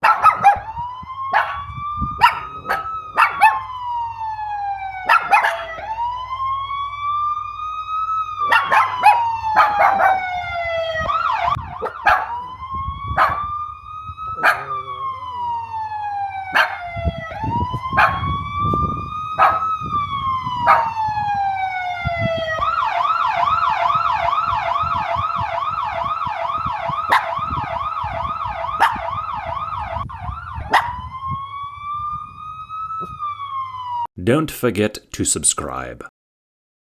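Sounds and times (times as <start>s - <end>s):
small dogs yipping: 0.0s - 4.0s, 4.8s - 6.0s, 8.4s - 10.6s, 11.8s - 13.6s, 14.2s - 17.0s, 17.8s - 18.4s, 19.3s - 19.8s, 20.5s - 21.1s, 27.1s - 27.4s, 28.8s - 29.1s, 30.7s - 31.0s
police siren: 0.0s - 34.1s.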